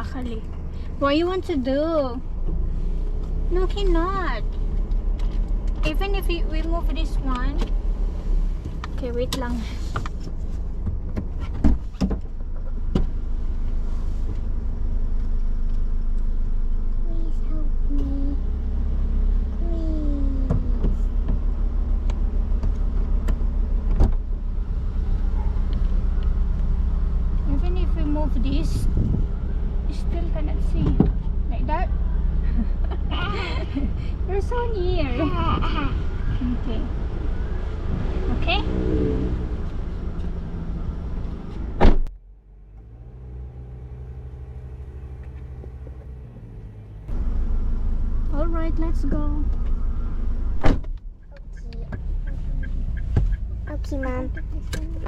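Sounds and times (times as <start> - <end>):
car engine idling: 0.0 - 38.6, 39.3 - 55.0
car door slamming: 23.9 - 24.2, 41.6 - 42.1, 50.5 - 51.1.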